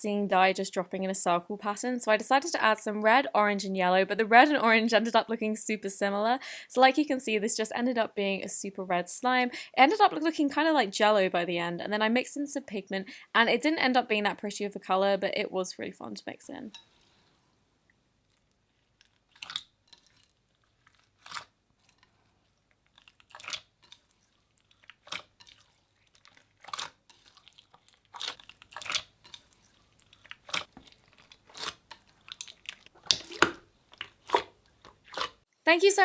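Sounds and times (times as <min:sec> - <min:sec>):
slime popping and crackling: 0:18.3 - 0:22.1, 0:22.8 - 0:35.4.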